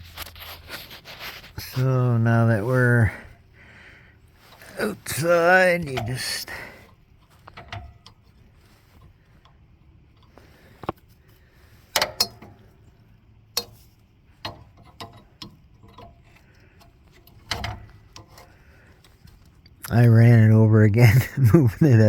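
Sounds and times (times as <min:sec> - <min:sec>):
metal parts clicking and knocking: 0:11.9 - 0:12.6, 0:14.4 - 0:18.6.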